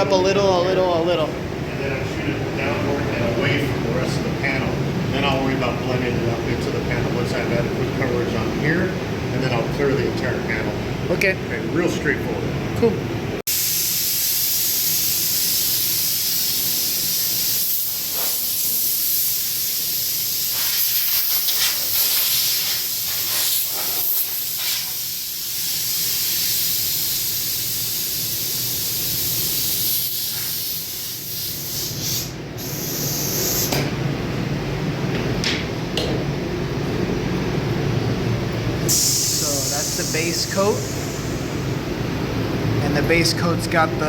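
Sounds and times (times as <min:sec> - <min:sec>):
paint spray gun hissing: 0:13.5 - 0:33.8, 0:38.9 - 0:41.8.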